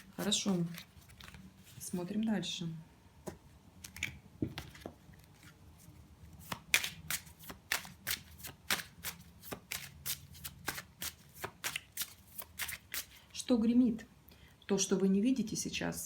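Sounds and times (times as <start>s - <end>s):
cards shuffled by hand: 0.0s - 2.1s, 3.8s - 13.2s
card snaps: 6.5s - 9.9s.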